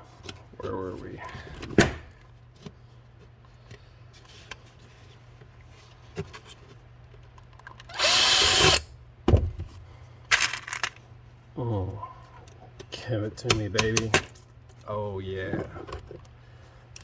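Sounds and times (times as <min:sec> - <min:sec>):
power drill spinning up: 0:07.9 - 0:08.8.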